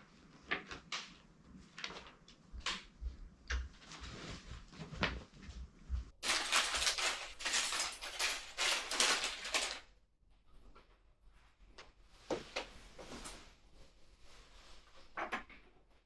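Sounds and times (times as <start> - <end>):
plastic packaging crinkling and clatter: 0.6 - 2.9, 6.2 - 10.0.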